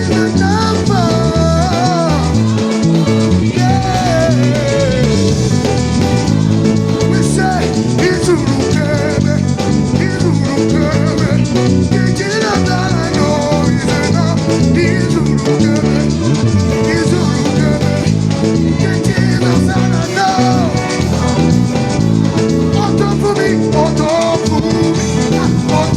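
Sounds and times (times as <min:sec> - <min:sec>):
gospel band playing: 0:00.0 - 0:25.9
voices singing along: 0:00.0 - 0:25.9.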